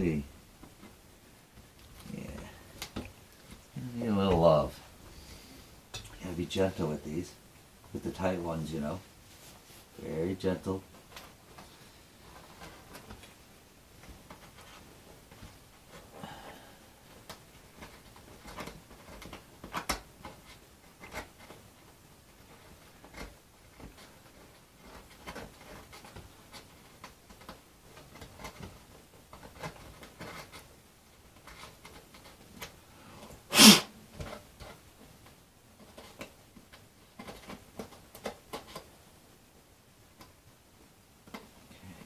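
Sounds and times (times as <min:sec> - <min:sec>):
clicks and rustles of handling parts: 0:00.6 - 0:04.5, 0:10.6 - 0:16.1, 0:17.1 - 0:33.5, 0:34.1 - 0:41.8.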